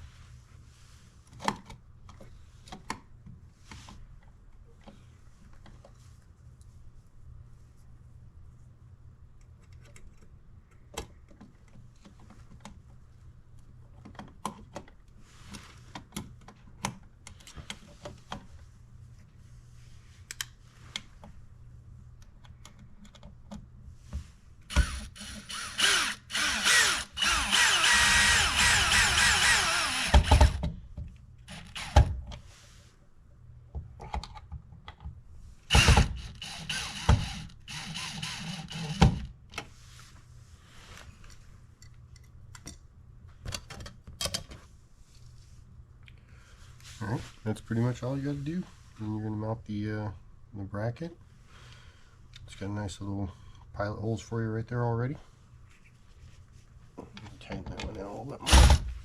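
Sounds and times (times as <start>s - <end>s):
cordless drill running: 24.7s - 30.6s, 31.5s - 32.2s, 35.7s - 39.2s.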